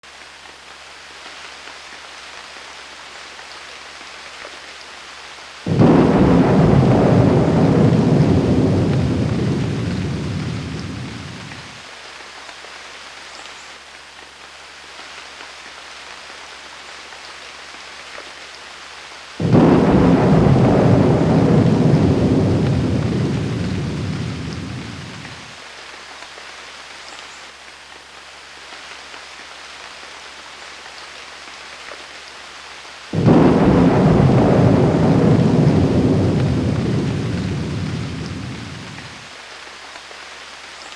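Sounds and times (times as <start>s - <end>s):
steady rain: 0.0s - 40.9s
thunder claps rumbling: 5.7s - 11.8s, 19.4s - 25.6s, 33.2s - 39.3s.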